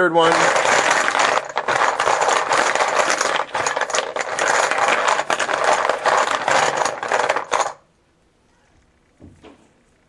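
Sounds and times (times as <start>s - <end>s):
chips rattling in a container: 0.0s - 7.8s.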